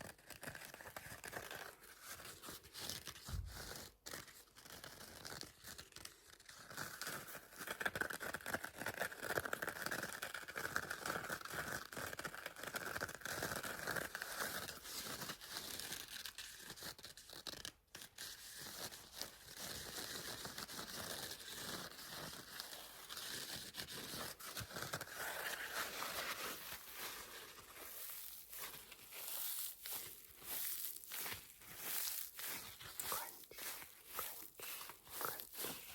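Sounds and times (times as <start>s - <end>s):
scratching on kitchen sponge: 21.6s - 35.9s.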